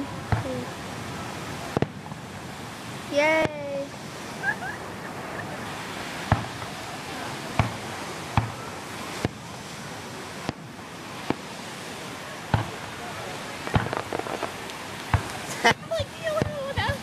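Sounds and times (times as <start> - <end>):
fireworks bangs: 0.0 - 17.0
rushing background noise: 0.0 - 17.0.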